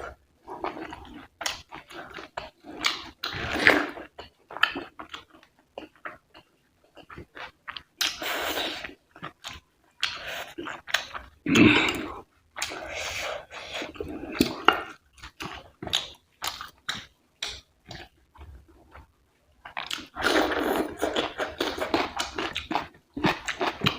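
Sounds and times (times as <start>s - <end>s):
wet chewing and smacking: 0.5s - 23.9s.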